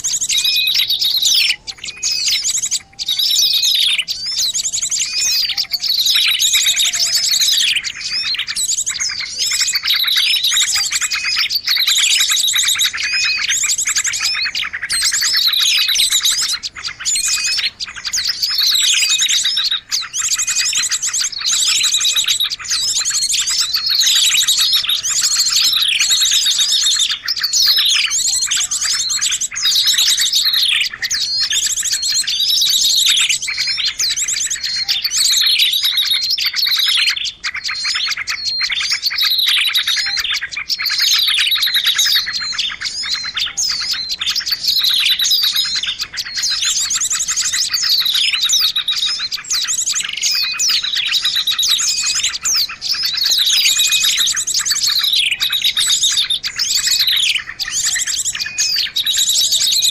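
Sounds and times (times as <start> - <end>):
falling bird call: 0.0 - 59.9
songbirds chirping and trilling: 0.0 - 59.9.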